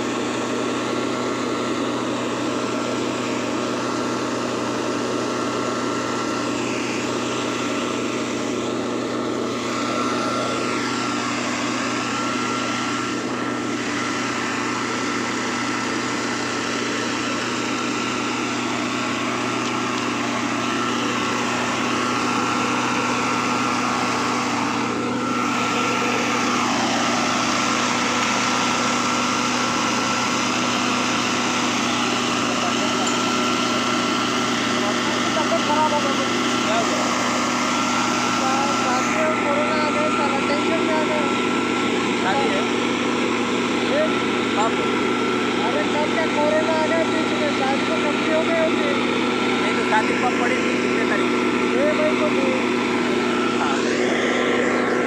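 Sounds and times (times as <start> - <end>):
small engine running: 0.0 - 55.0.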